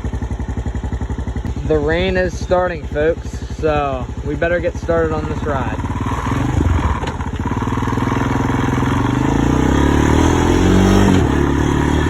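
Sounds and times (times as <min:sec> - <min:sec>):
quad bike engine pulling away: 0:00.0 - 0:12.0.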